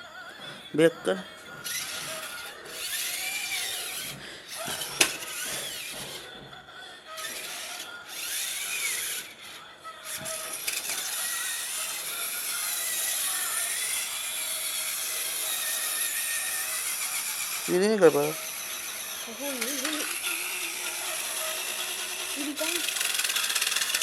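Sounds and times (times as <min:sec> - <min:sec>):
toy truck motor whirring: 0:00.0 - 0:24.0.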